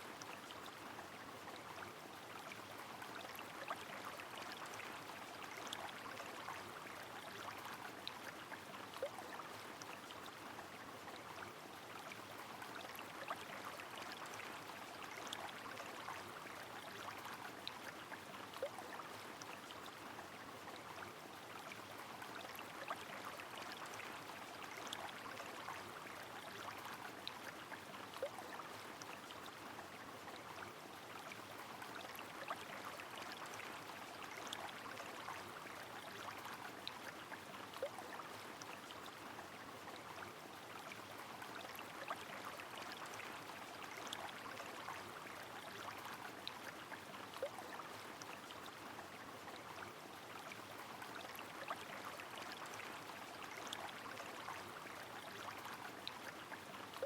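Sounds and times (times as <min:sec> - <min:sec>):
flowing river: 0:00.0 - 0:57.0.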